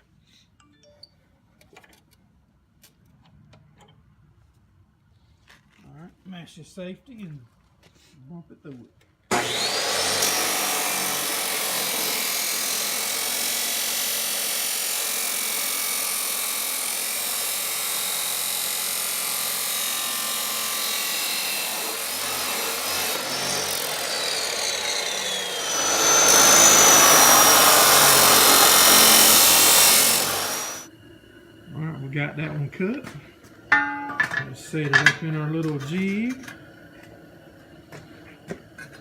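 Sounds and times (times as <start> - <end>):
chop saw cutting steel: 9.3 - 30.9.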